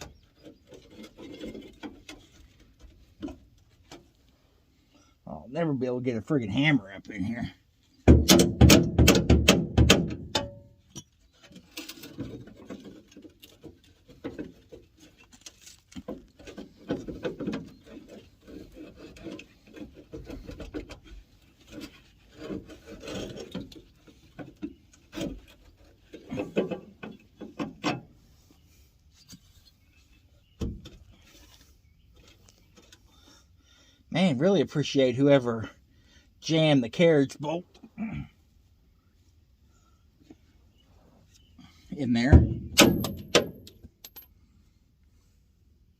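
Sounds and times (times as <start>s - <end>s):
sharp knocks: 8.1s - 10.6s
hand tools scraping metal: 17.7s - 24.2s.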